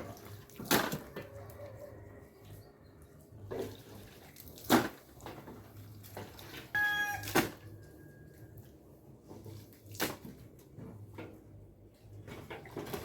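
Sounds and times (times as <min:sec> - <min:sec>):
high-pitched animal call: 0:06.8 - 0:07.4.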